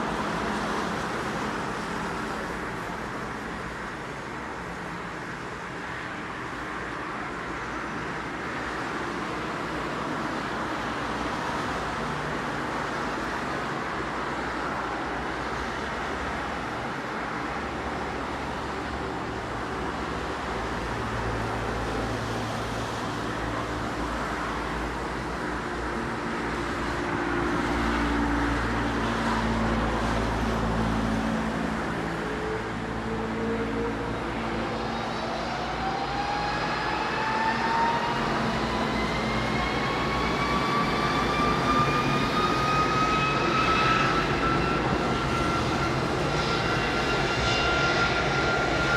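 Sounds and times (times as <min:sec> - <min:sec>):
jet engines running: 0:31.8 - 0:48.9.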